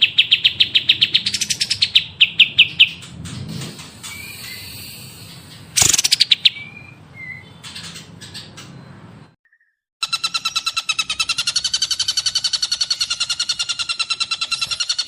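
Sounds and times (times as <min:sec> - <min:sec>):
rapid bird trill: 0:00.0 - 0:03.1, 0:04.0 - 0:08.9, 0:09.6 - 0:15.0
bird chirps and whistles: 0:04.0 - 0:07.6.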